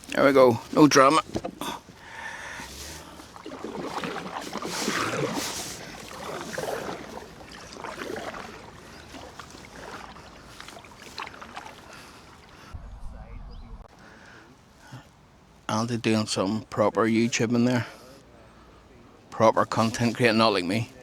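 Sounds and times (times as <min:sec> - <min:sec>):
kayak paddles splashing in water: 0:00.0 - 0:12.8.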